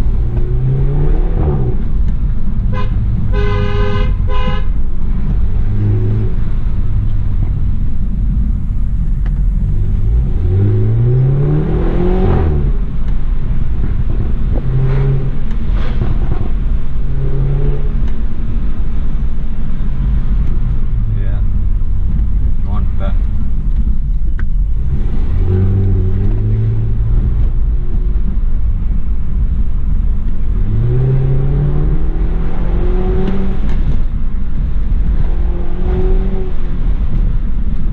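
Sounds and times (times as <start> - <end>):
car engine revving: 0.0 - 37.9
car horn honking: 2.7 - 4.8.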